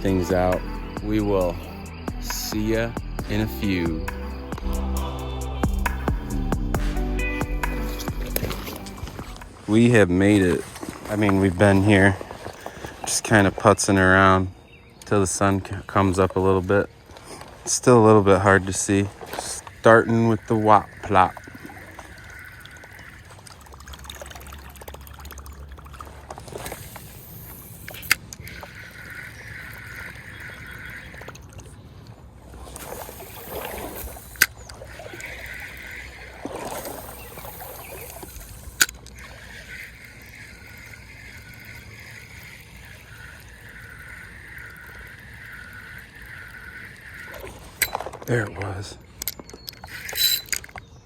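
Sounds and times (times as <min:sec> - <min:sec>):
reel click: 0:00.0 - 0:05.2, 0:05.8 - 0:14.4, 0:15.0 - 0:25.4, 0:26.0 - 0:31.8, 0:32.5 - 0:51.0
fishing rod swish: 0:00.0 - 0:09.7, 0:32.6 - 0:48.1
fishing reel cranking: 0:00.0 - 0:51.0.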